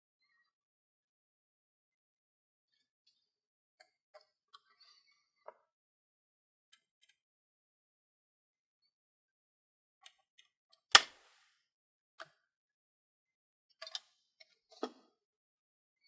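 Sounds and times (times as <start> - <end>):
sharp loud snap: 11.0 - 11.4.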